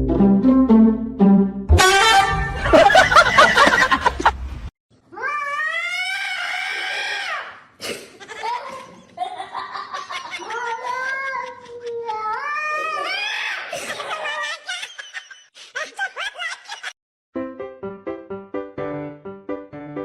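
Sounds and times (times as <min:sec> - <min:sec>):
loud music: 0:00.0 - 0:03.4.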